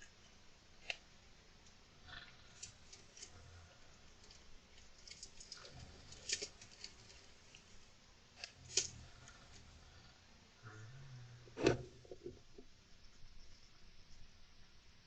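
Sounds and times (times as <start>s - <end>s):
hamster scratching: 4.2s - 7.8s.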